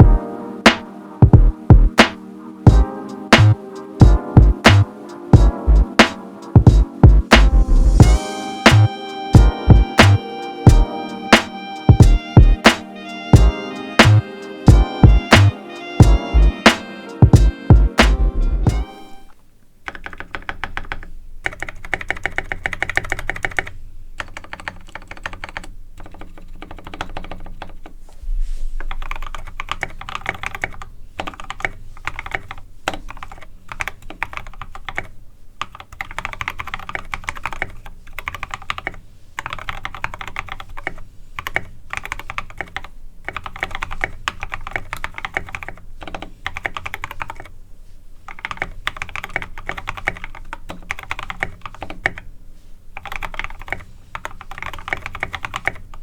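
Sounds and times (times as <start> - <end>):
typing on mechanical keyboard: 19.8 - 28.0, 28.8 - 47.5, 48.3 - 52.3, 53.0 - 56.0.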